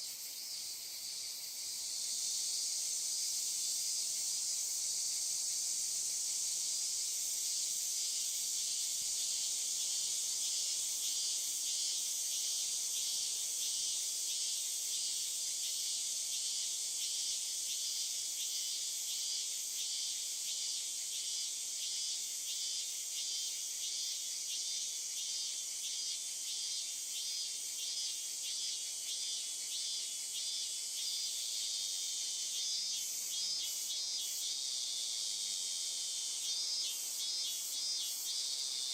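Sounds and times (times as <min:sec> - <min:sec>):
insect chirps pulsing: 0:00.0 - 0:38.9
insects droning: 0:00.0 - 0:38.9.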